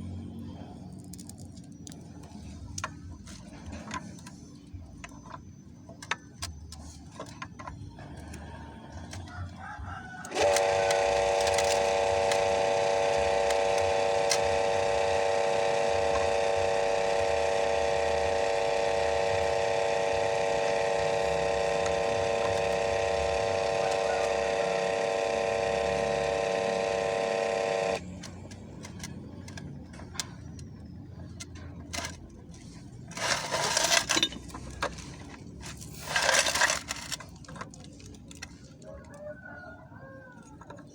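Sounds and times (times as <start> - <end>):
water pump motor humming: 8.0 - 29.0
light clicks and parts handling: 28.2 - 39.4.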